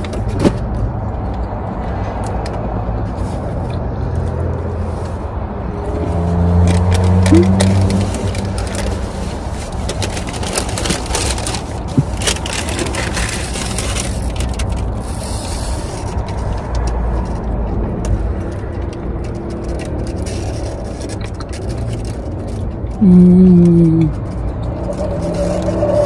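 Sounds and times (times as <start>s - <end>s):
food wrapping crackling: 5.8s - 17.6s, 18.2s - 26.0s.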